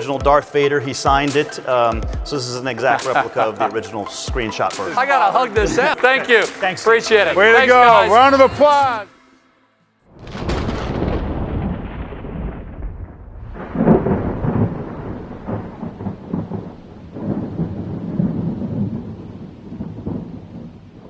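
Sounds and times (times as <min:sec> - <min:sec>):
crack of thunder: 0:10.1 - 0:21.0
thunder rumbling: 0:10.1 - 0:21.0
rain hissing: 0:10.3 - 0:21.0.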